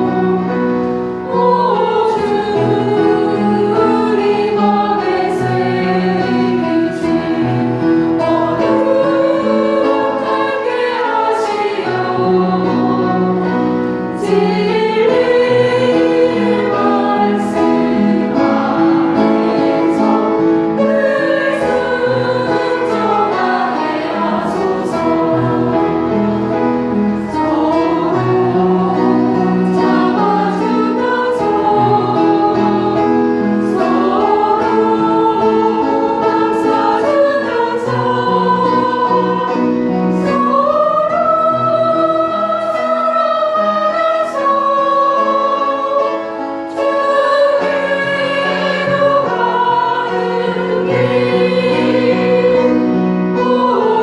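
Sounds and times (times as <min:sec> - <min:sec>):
choir singing a hymn: 0:00.0 - 0:54.0
sustained accompanying notes: 0:00.0 - 0:54.0.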